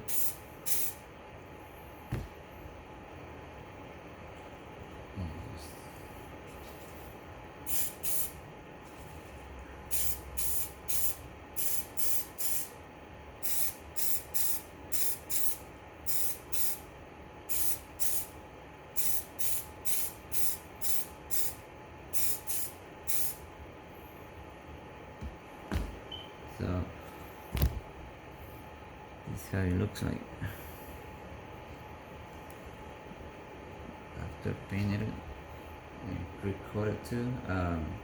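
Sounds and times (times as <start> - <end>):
aerosol can spraying bursts: 22.2 - 23.4.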